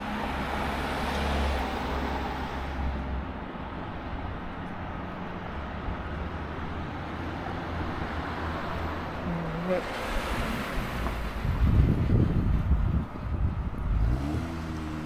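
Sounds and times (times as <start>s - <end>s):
low rumble of road traffic: 0.0s - 15.0s
vehicle passing: 4.9s - 15.0s.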